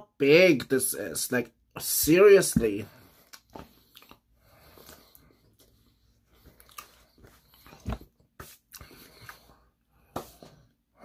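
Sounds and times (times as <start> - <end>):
biting and chewing: 6.3 - 9.4.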